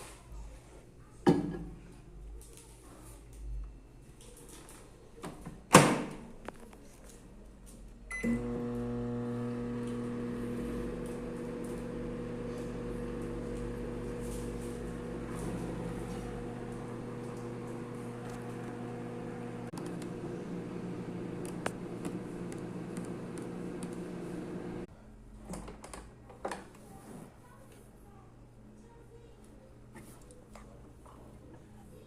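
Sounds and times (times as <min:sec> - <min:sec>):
microwave oven humming: 0:08.1 - 0:24.9.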